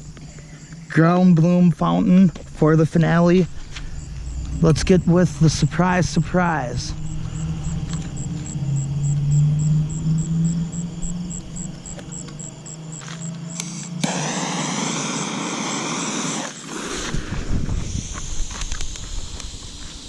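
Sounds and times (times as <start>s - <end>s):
low steady hum: 2.1s - 13.3s
firework fuse hissing: 13.5s - 20.0s.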